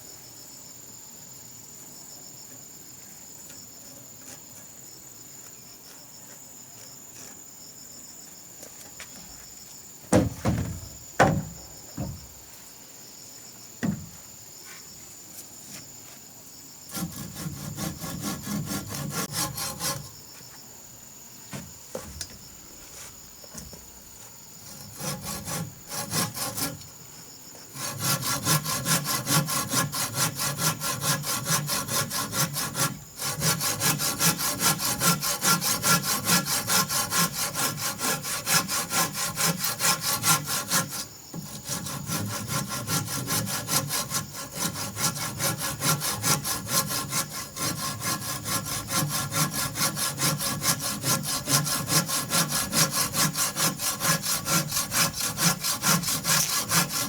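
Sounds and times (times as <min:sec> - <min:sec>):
saw cutting through wood: 0:16.9 - 0:20.1, 0:24.6 - 0:26.8, 0:27.7 - 0:57.0.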